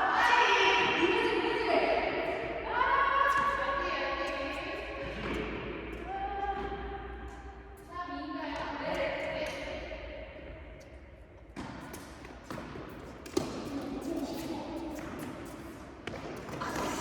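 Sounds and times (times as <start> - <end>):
rackets hitting tennis balls: 3.2 - 7.9, 10.8 - 17.0
tennis balls bouncing: 4.2 - 7.9, 11.4 - 17.0.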